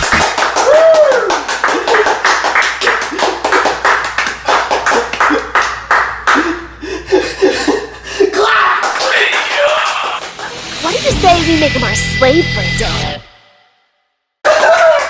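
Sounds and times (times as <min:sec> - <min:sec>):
person whooping: 0:00.0 - 0:02.2, 0:08.1 - 0:10.2, 0:14.5 - 0:15.0
audience clapping: 0:00.0 - 0:11.0, 0:14.5 - 0:15.0
people cheering: 0:00.0 - 0:11.2, 0:14.5 - 0:15.0.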